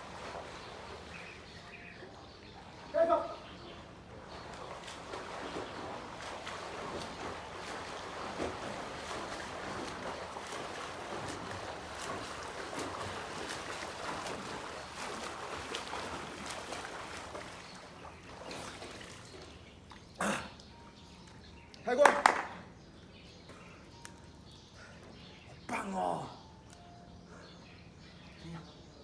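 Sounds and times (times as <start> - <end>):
water sloshing and splashing: 0.0 - 21.6
water dripping: 0.0 - 22.6.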